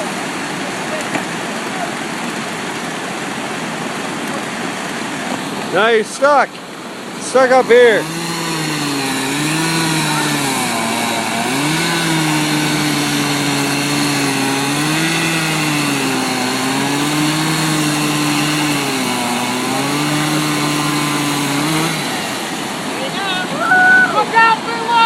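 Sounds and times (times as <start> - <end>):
chainsaw cutting: 4.0 - 23.6.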